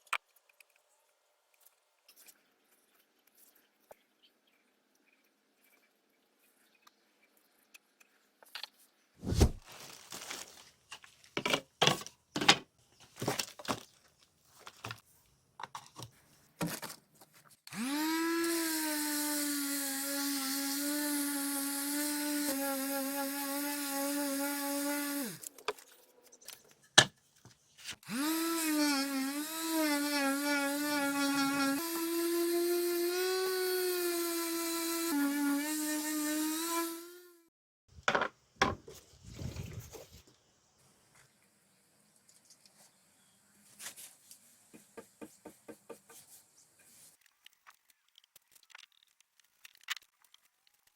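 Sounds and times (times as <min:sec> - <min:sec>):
electric power tool whine: 0:17.7 - 0:25.5, 0:28.0 - 0:37.5.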